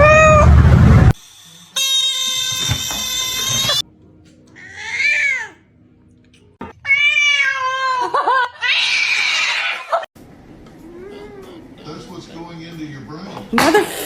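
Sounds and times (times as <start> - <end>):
cat meowing: 0.0 - 0.5, 4.6 - 5.6, 6.8 - 9.9.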